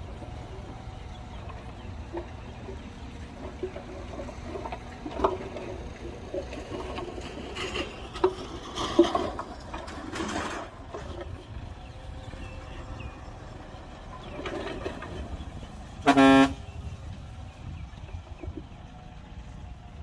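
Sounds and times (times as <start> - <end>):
heavy machinery rumbling: 0.0 - 20.0.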